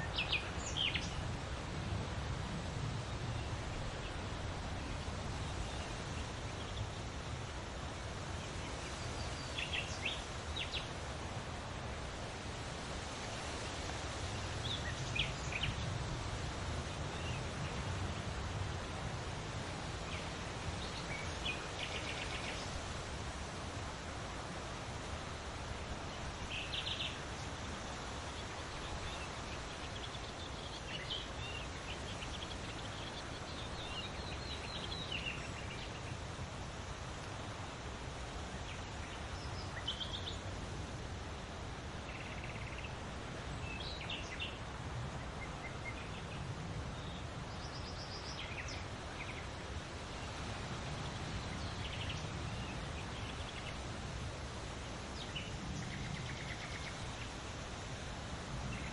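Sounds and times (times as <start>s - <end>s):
small birds chirping: 0.0s - 1.4s, 3.0s - 11.2s, 13.1s - 23.3s, 24.6s - 40.6s, 42.0s - 58.9s
breeze through forest: 0.0s - 58.9s.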